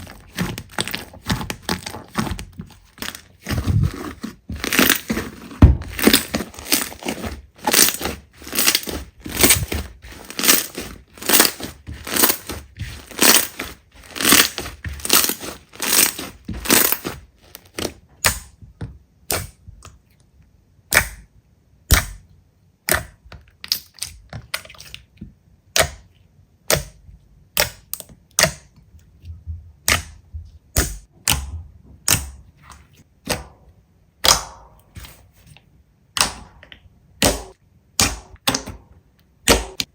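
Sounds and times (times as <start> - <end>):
slime popping and crackling: 0.0 - 18.5.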